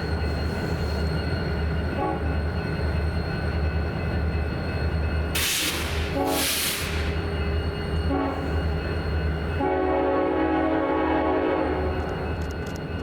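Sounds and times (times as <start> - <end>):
train rumbling past: 0.0 - 13.0
hiss bursts: 5.4 - 7.3.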